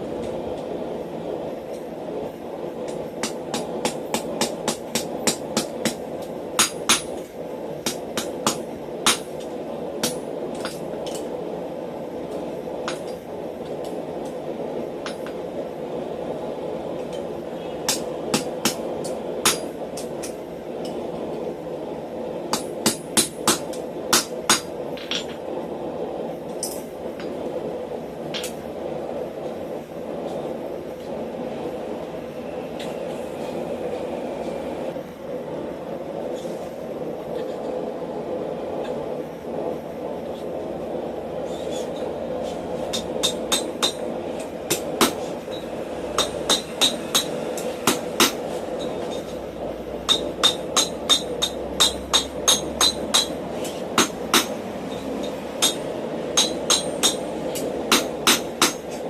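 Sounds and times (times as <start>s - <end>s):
hammer striking steel on anvil: 2.9s - 7.2s, 7.8s - 9.3s, 17.9s - 21.0s, 22.5s - 25.4s, 42.9s - 45.6s, 46.2s - 49.3s, 50.1s - 58.8s.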